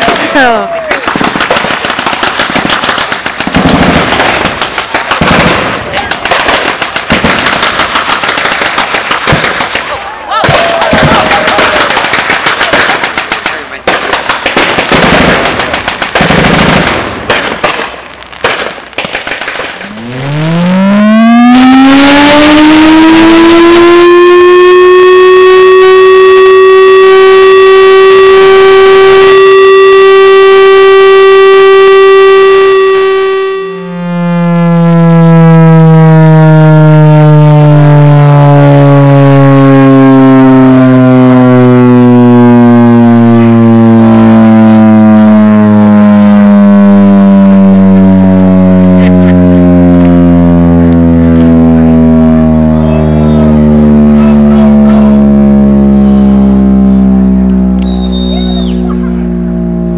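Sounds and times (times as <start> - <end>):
gunfire: 0.0 - 20.2
air-raid siren wailing: 19.8 - 59.9.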